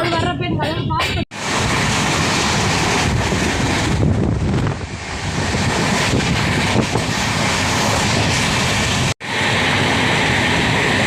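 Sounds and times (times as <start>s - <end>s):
moving train rumble: 0.0s - 11.0s
wind buffeting microphone: 0.0s - 11.0s.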